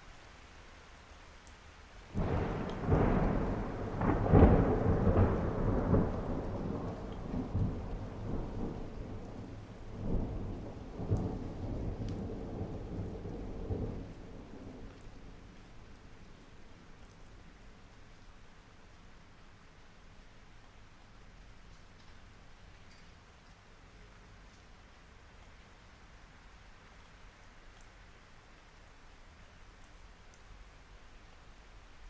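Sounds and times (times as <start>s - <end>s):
steady rain: 0.0s - 32.0s
rolling thunder: 2.1s - 15.5s.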